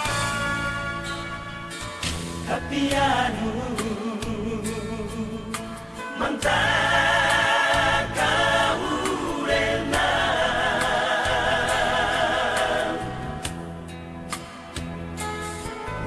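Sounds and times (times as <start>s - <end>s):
several voices singing together: 2.5s - 4.2s, 6.1s - 13.6s.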